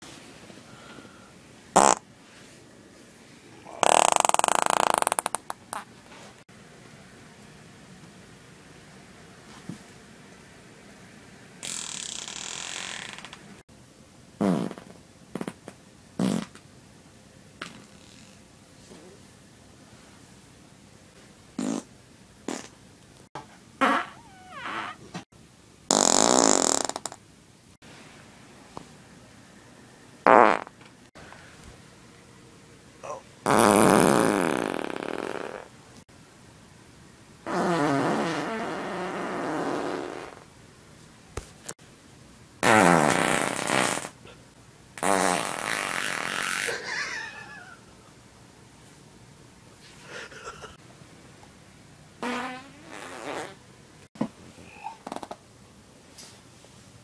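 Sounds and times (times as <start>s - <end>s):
loud farts: 1.8s - 2.1s, 3.7s - 5.9s, 11.6s - 13.4s, 14.4s - 16.6s, 21.6s - 21.9s, 22.5s - 22.8s, 23.8s - 25.2s, 25.9s - 27.2s, 30.2s - 30.8s, 33.4s - 35.7s, 37.4s - 40.5s, 42.6s - 44.2s, 45.0s - 46.8s, 52.2s - 53.6s.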